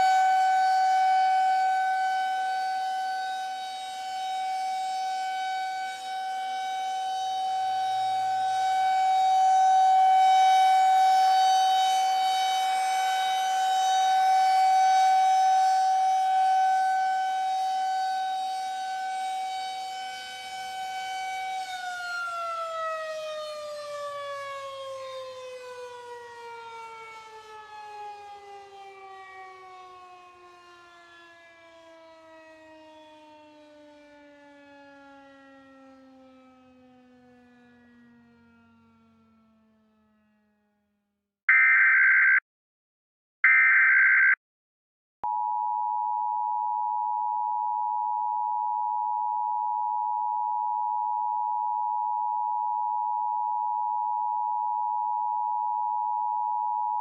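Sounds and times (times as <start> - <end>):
air-raid siren: 0.0 - 40.9.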